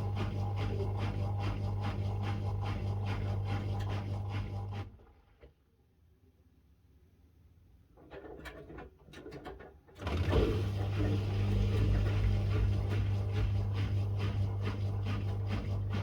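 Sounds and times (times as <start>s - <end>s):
drain pump humming: 0.0s - 4.8s, 10.0s - 16.0s.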